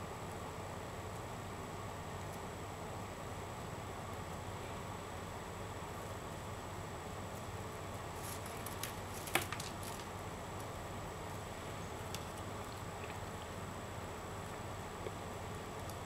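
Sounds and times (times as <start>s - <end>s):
steady background hiss: 0.0s - 16.0s
plastic strands rustling: 8.1s - 10.2s.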